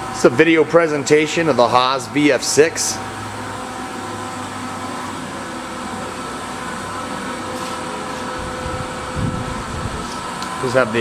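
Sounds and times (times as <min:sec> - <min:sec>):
machine shop hum: 0:08.4 - 0:10.3.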